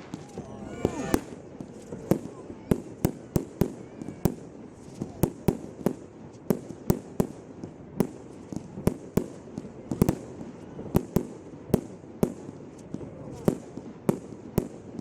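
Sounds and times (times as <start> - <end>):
fireworks banging: 0.0 - 5.9.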